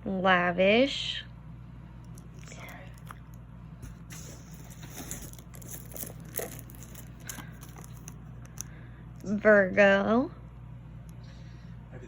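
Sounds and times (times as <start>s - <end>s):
steady low hum: 0.0s - 12.0s
plastic packaging crinkling: 2.0s - 9.3s.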